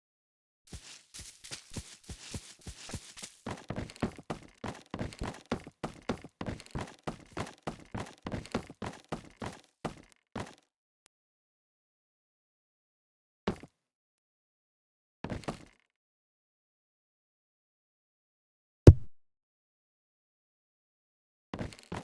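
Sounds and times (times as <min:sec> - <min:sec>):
rapid thuds and knocks: 0:00.7 - 0:09.6.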